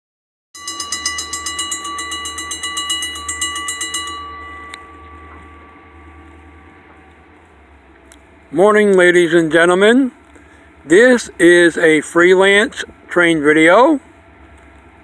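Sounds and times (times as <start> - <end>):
crossing bell ringing: 0.6 - 9.9
low steady hum: 0.6 - 15.0.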